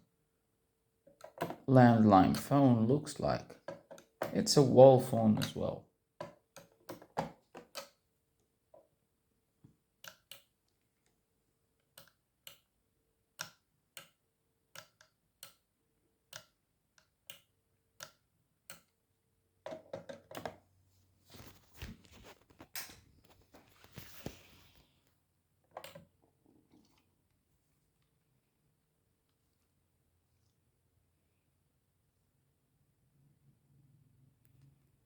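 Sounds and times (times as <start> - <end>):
rustling and handling noise: 19.7 - 28.4.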